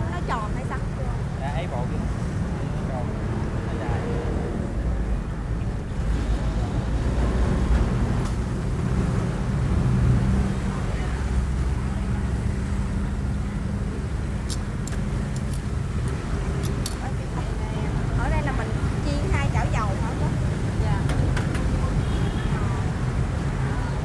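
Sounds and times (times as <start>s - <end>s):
motorbike engines running: 0.0s - 24.0s
street traffic: 0.0s - 24.0s
sharp clicks: 14.5s - 17.0s.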